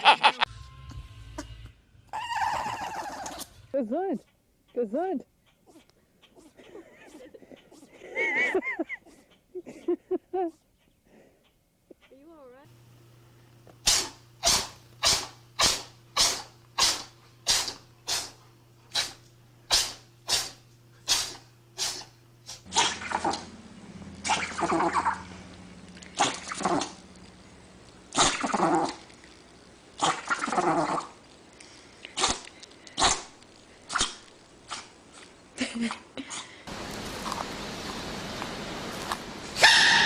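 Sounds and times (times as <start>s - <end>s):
pet sneezing: 13.8s - 23.5s, 32.2s - 33.3s
short cry falling in pitch: 39.6s - 40.0s.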